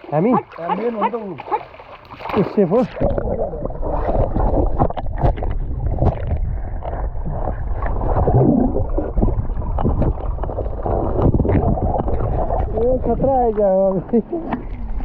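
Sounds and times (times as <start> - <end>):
river water splashing: 0.0 - 7.0
wind rumbling on microphone: 3.0 - 15.0.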